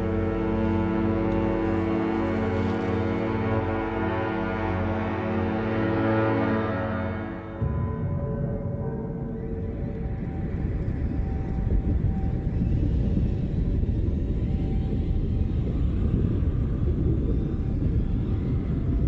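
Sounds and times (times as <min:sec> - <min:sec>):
deep steady rumble: 0:07.3 - 0:19.0.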